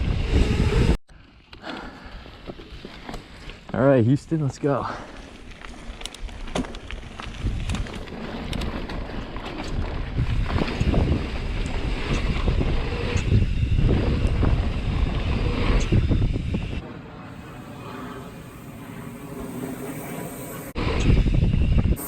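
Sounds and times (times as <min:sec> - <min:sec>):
wind rushing over microphone: 0:00.0 - 0:01.0, 0:07.0 - 0:22.0
bike clicks and rattles: 0:04.9 - 0:16.5.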